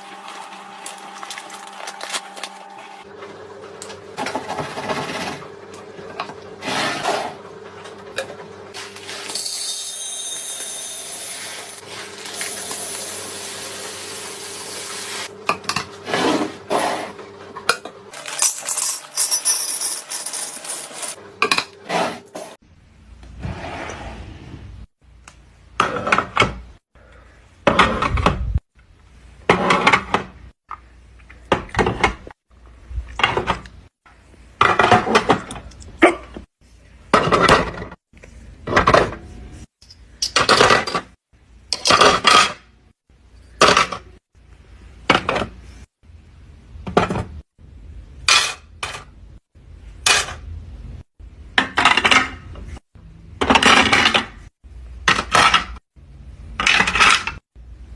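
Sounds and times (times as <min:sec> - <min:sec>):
hard objects clinking and clattering: 0:18.1 - 0:21.7.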